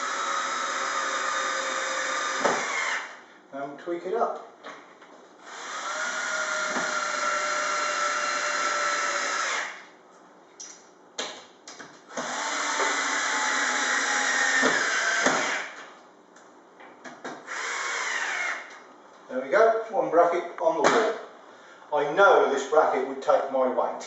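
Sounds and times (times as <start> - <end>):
electric drill driving screws: 0.0 - 3.2, 5.4 - 9.8, 12.1 - 15.8, 17.5 - 18.8.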